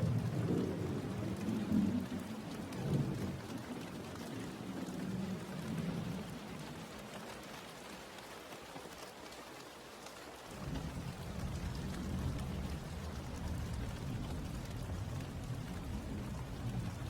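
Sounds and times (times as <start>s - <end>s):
rolling thunder: 0.0s - 3.6s, 10.5s - 17.0s
steady rain: 0.0s - 17.0s.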